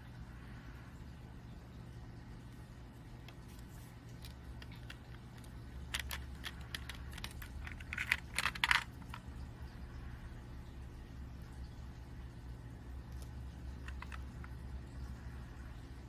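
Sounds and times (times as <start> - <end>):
steady low hum: 0.0 - 16.0
plastic toy bricks clicking: 4.2 - 9.3, 13.2 - 14.6.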